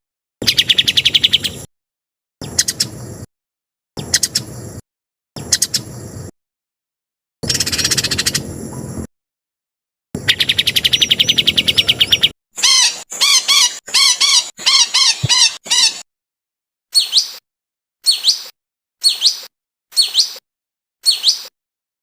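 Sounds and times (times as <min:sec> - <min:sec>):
bird chirps: 0:00.4 - 0:01.7, 0:02.4 - 0:03.0, 0:04.0 - 0:04.6, 0:05.4 - 0:06.0, 0:07.4 - 0:08.9, 0:10.2 - 0:16.0, 0:16.9 - 0:17.4, 0:18.0 - 0:20.4, 0:21.0 - 0:21.6
songbird trill: 0:00.4 - 0:01.7, 0:02.4 - 0:03.2, 0:04.0 - 0:04.8, 0:05.4 - 0:06.0, 0:07.4 - 0:09.1, 0:10.2 - 0:16.0, 0:17.0 - 0:17.4, 0:18.0 - 0:20.4, 0:21.0 - 0:21.5
downslurred bird whistles: 0:17.0 - 0:17.4, 0:18.0 - 0:20.4, 0:21.0 - 0:21.5.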